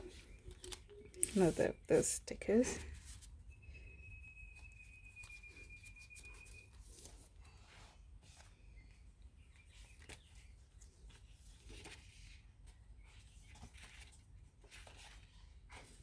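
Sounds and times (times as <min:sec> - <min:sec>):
pages rustling: 0:00.0 - 0:03.3, 0:04.6 - 0:16.0.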